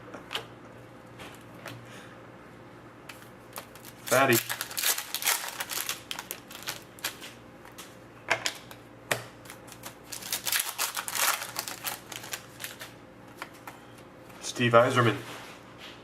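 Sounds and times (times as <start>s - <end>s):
trading cards clicking and rustling: 3.5s - 7.9s, 9.5s - 13.8s.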